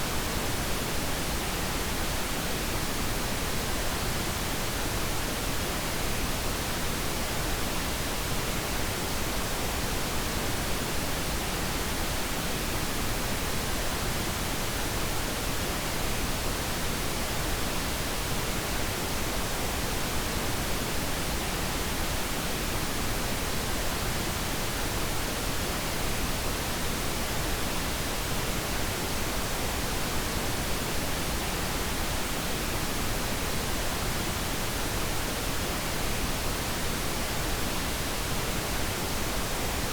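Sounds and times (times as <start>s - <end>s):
steady noise hiss: 0.0s - 39.9s.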